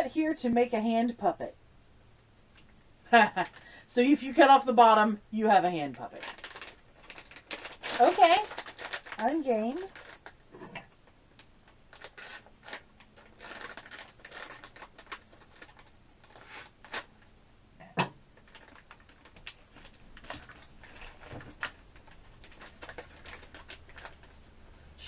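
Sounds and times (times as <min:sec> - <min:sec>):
plastic wrapper crinkling: 0:03.4 - 0:03.8, 0:05.8 - 0:10.4, 0:11.3 - 0:17.2, 0:18.4 - 0:24.4.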